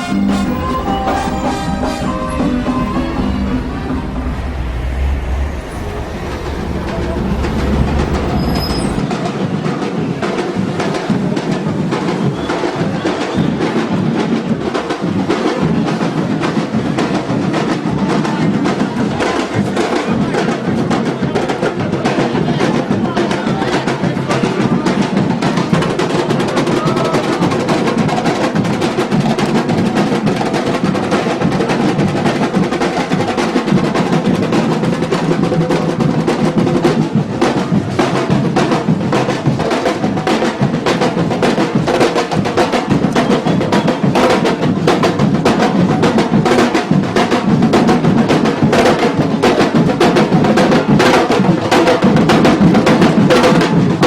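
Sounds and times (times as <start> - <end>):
percussion ensemble drumming: 0.0 - 9.0.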